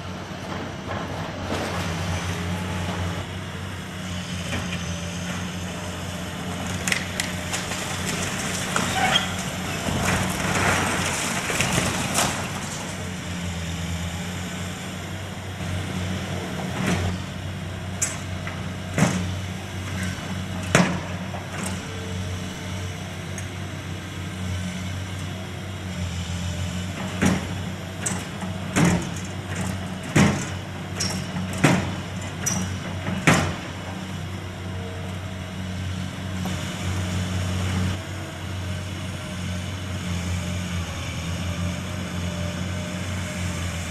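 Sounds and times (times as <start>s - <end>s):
diesel engine drone: 0.0s - 43.9s
debris knocking and clanking: 6.8s - 13.0s.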